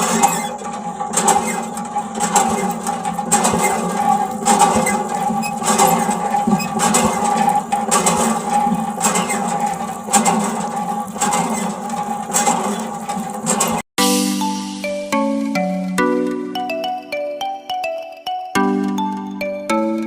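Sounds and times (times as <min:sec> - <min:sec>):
small motor running: 0:00.0 - 0:13.8.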